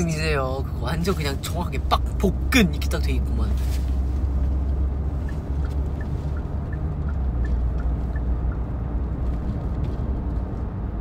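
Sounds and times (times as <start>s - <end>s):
vehicle rumble: 0.0s - 11.0s
faint two-pitch ticking: 5.2s - 8.7s.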